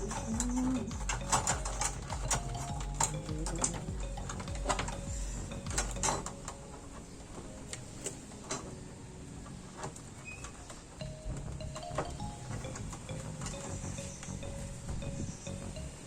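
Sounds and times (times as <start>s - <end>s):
clicks and knocks of tools: 0.0s - 5.0s.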